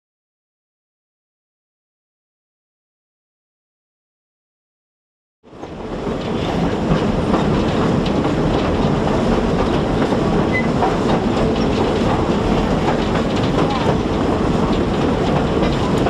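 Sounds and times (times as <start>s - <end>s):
train wheels rumbling on rails: 5.5s - 16.0s
track clicks: 5.6s - 16.0s.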